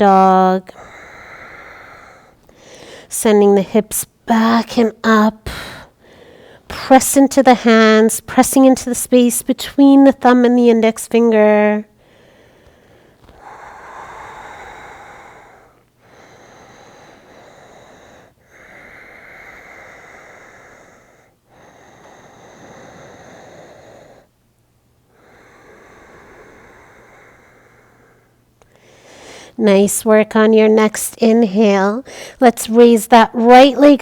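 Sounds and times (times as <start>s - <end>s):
person breathing deeply: 0.8s - 3.1s, 5.5s - 6.7s, 12.0s - 24.3s, 25.1s - 29.6s.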